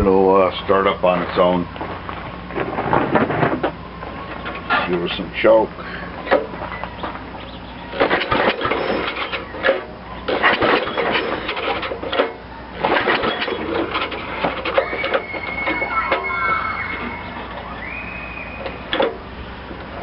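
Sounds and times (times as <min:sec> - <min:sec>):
mower engine cranking on recoil starter: 0:07.9 - 0:17.7.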